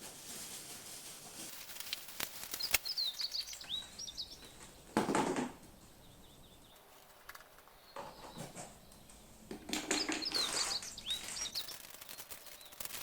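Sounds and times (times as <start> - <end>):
packaging rustling: 0.0 - 3.7, 10.3 - 13.0
small birds chirping: 1.5 - 13.0.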